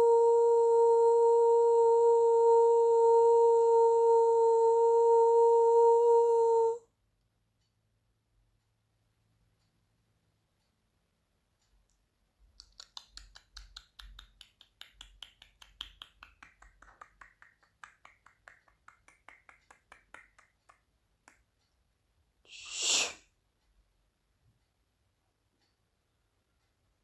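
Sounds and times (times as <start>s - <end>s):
tongue clicks: 11.9s - 21.5s
breathy shh exhale: 22.5s - 23.2s.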